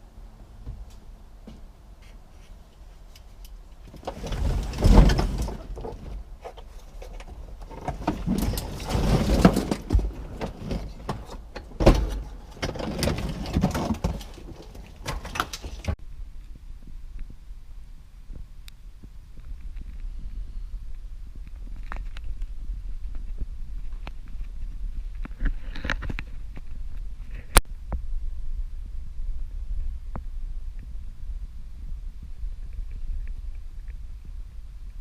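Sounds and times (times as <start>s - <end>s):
hands rustling and scraping wiring: 0.8s - 16.0s, 19.0s - 27.6s.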